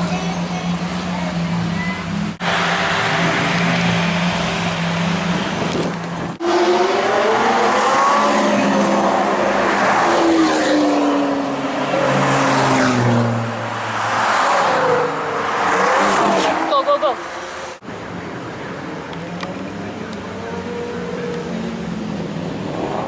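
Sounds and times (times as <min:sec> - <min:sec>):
car engine revving: 0:00.0 - 0:17.8.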